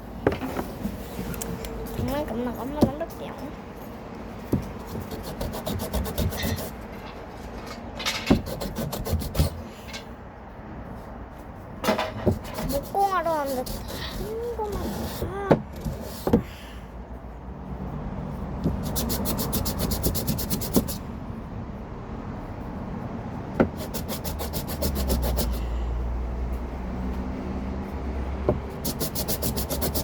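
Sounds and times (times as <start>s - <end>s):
wood rubbing on sandpaper: 4.5s - 6.8s, 8.3s - 9.6s, 12.3s - 15.3s, 18.7s - 21.1s, 23.6s - 25.8s, 28.6s - 30.0s
wood knocking on board: 23.6s - 23.8s.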